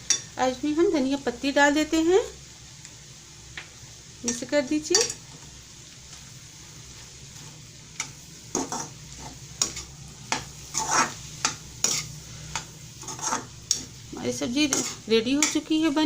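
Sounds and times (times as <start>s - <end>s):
faint frying sizzle: 0.0s - 16.0s
spatula scraping a pan: 7.3s - 15.7s.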